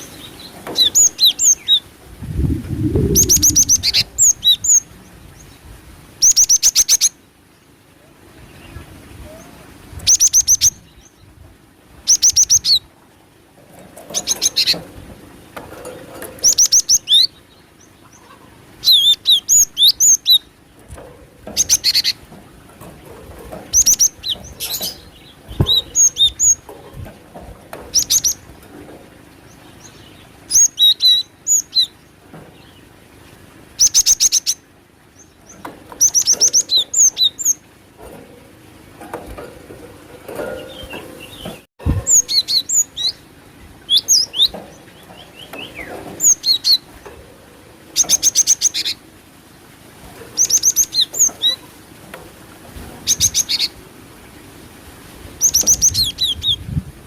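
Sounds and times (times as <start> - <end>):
bird chirping rapidly: 2.8 - 4.9.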